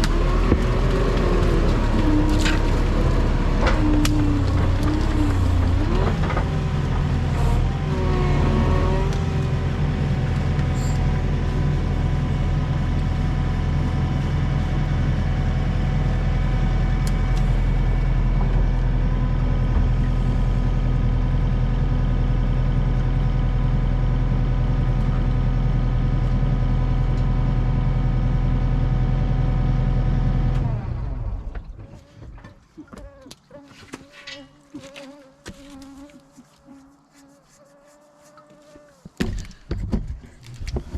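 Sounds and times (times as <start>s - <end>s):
skid steer engine at high revs: 0.0s - 32.2s.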